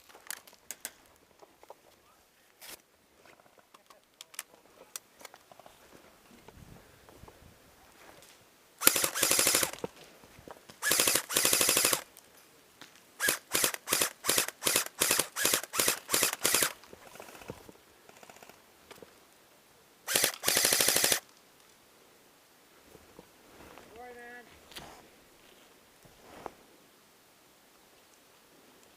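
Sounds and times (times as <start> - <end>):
airsoft gun firing bursts: 8.8 - 9.8, 10.8 - 12.0, 13.2 - 16.8, 20.1 - 21.2.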